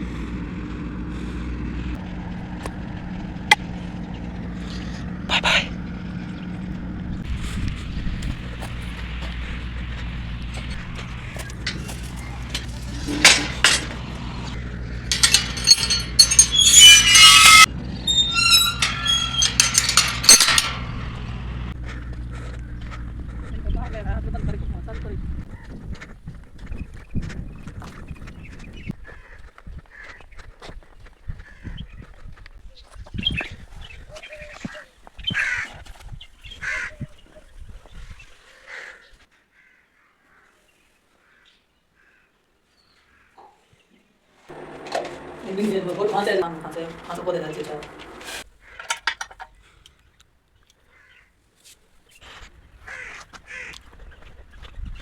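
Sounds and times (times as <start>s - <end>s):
harsh animal calls: 4.0s - 6.4s
glass objects clinking: 11.4s - 20.8s.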